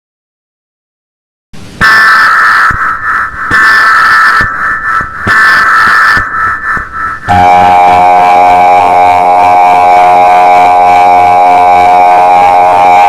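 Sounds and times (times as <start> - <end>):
raspy digital data bursts: 1.8 - 7.4
two-tone attention signal: 5.2 - 13.0.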